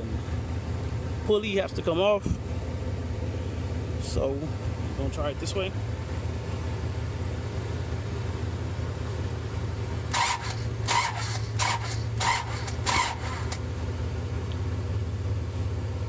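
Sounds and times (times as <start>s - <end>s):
steady low hum: 0.0s - 16.0s
car starter bursts: 10.0s - 13.7s.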